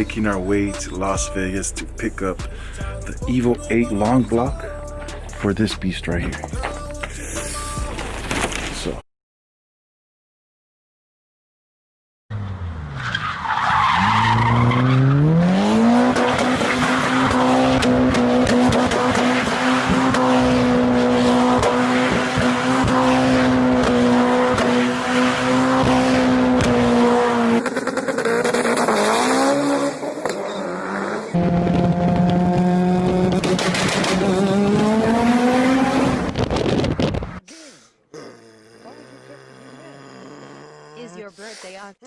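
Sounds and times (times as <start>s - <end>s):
car engine revving: 12.3s - 37.4s.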